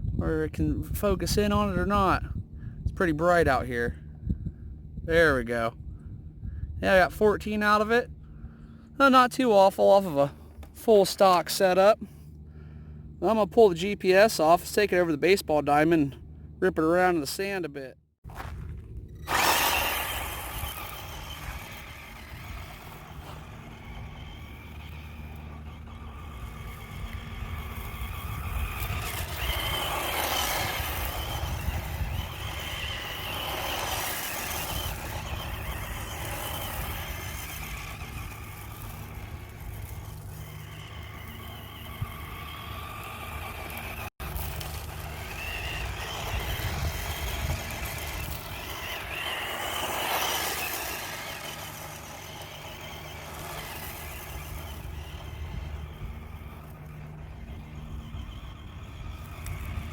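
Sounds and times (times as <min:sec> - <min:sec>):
rc car motor whining: 0:06.8 - 0:17.7, 0:18.3 - 0:59.9
steady rushing noise: 0:18.4 - 0:59.9.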